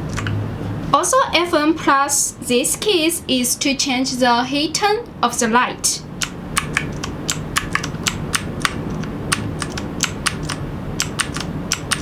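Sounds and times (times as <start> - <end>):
steady low hum: 0.0 - 12.0
clicky keyboard key presses: 6.2 - 12.0.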